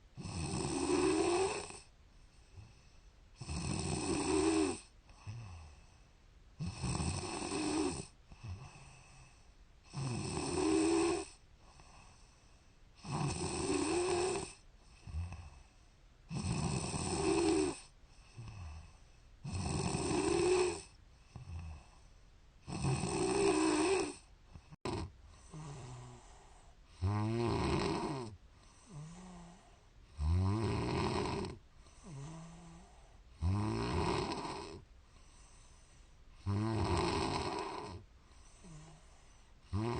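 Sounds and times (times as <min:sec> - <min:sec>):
woman snoring: 0:00.2 - 0:01.9, 0:03.4 - 0:06.0, 0:06.6 - 0:12.3, 0:13.0 - 0:15.7, 0:16.3 - 0:22.0, 0:22.6 - 0:34.9, 0:36.4 - 0:39.9
soft breaths: 0:00.7 - 0:03.4, 0:04.3 - 0:06.4, 0:07.5 - 0:09.9, 0:10.7 - 0:13.1, 0:14.0 - 0:16.3, 0:17.1 - 0:19.4, 0:20.2 - 0:22.7, 0:23.3 - 0:27.2, 0:28.0 - 0:30.2, 0:31.4 - 0:33.5, 0:34.5 - 0:36.5, 0:37.3 - 0:39.8.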